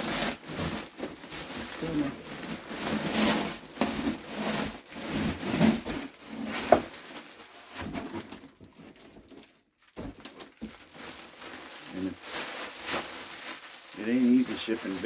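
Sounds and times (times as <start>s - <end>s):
packaging scraping and rubbing: 0.0s - 9.6s, 10.2s - 15.0s.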